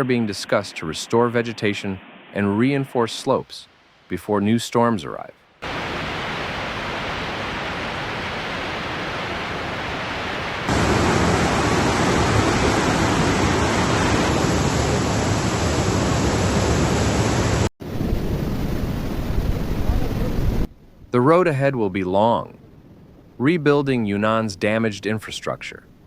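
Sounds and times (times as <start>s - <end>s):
floodwater rushing: 5.6s - 17.7s.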